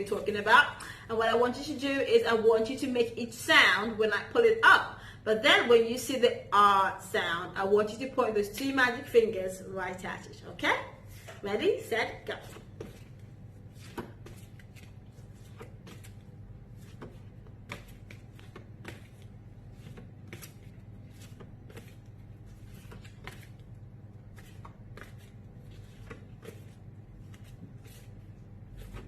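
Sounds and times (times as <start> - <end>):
steady low hum: 0.0 - 29.0
flashcards rustling and tapping: 13.8 - 28.1.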